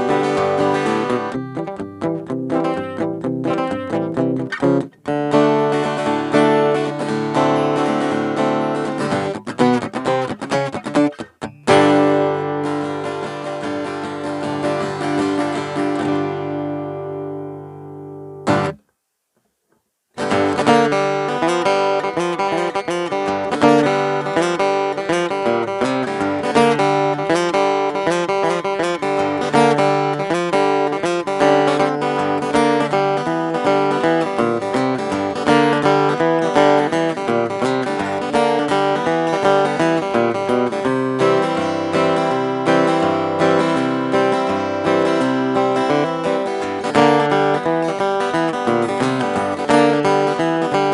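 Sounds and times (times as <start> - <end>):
acoustic guitar picking and strumming: 0.0 - 18.9, 20.2 - 50.9.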